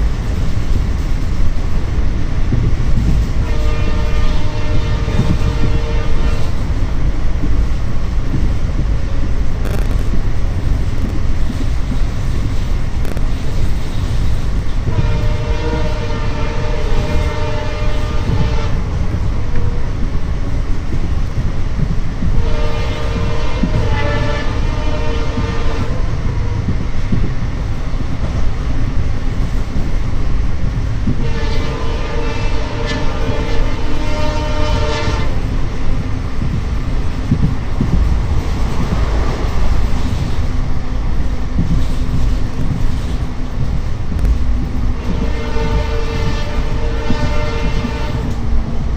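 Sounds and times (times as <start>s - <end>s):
train rumbling on rails: 0.0s - 48.9s
locomotive horn blasts: 3.4s - 6.6s, 14.8s - 19.8s, 22.4s - 26.6s, 31.2s - 35.4s, 45.0s - 48.4s.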